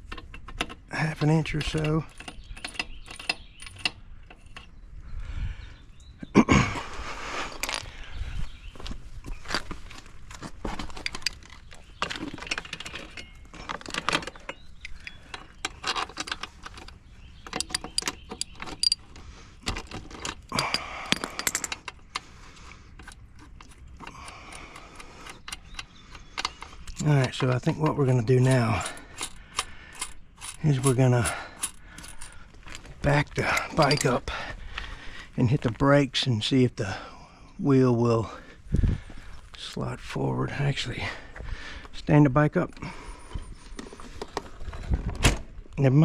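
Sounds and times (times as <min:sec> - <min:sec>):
metal hand tools clinking: 0:12.3 - 0:19.1, 0:33.5 - 0:34.5.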